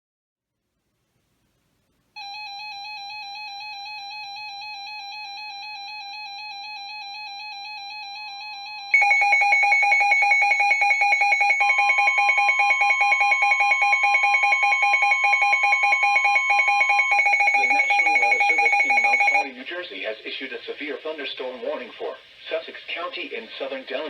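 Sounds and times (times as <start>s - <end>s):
rapidly pulsing electronic alert tone: 9.0s - 19.4s
wavering electronic tune: 9.0s - 19.4s.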